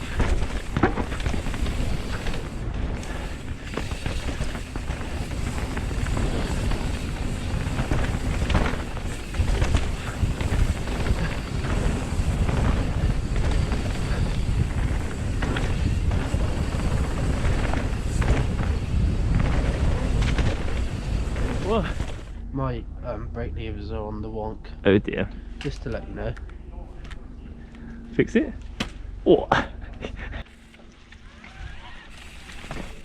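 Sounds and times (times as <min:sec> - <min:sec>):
bike knocks and rattles: 0:00.0 - 0:22.4, 0:32.1 - 0:33.0
wind buffeting microphone: 0:00.0 - 0:25.1.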